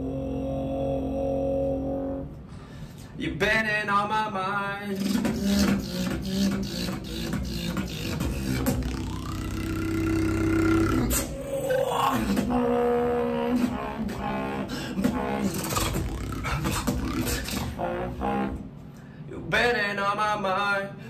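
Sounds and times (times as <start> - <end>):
beatboxing: 4.8 - 18.7.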